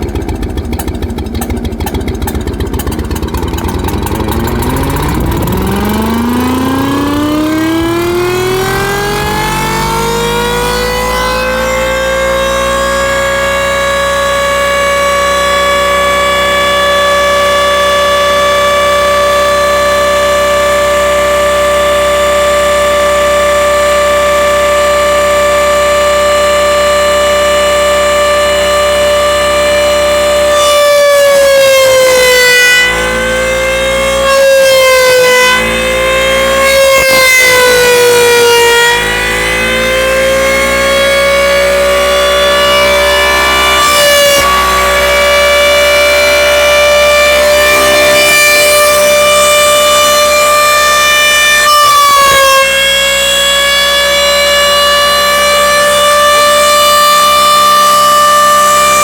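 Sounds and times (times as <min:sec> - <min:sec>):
air raid siren wailing: 0:02.5 - 0:59.0.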